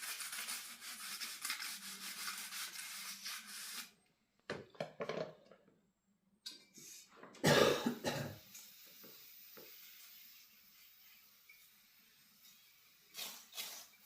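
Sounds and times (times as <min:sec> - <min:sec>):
person clearing throat: 0:07.4 - 0:08.4
person coughing: 0:07.4 - 0:08.4.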